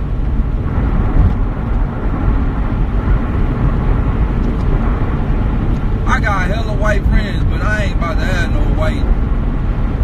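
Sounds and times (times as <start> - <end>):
low rumbling noise: 0.0 - 10.0.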